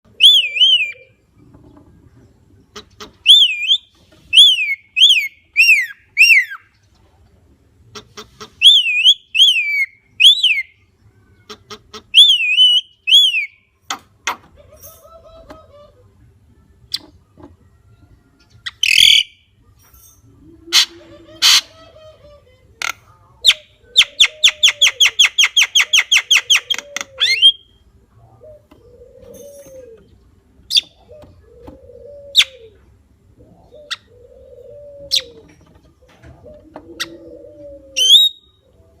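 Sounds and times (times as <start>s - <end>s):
myna bird calling: 0.1s - 1.3s, 2.6s - 6.8s, 7.9s - 13.6s, 20.4s - 39.0s
bird whistled notes: 38.0s - 38.6s.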